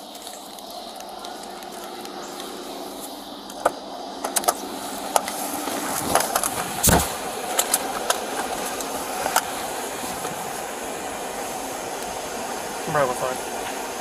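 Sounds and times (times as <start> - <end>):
car interior background noise: 0.0 - 14.0
loud thump: 6.8 - 7.2.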